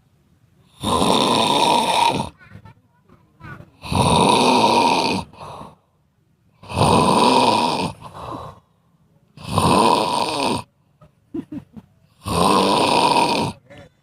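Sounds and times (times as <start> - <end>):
squirrel snoring: 0.6 - 2.4, 3.8 - 5.8, 6.6 - 8.6, 9.4 - 10.7, 12.2 - 13.6
soft breath: 7.9 - 9.0.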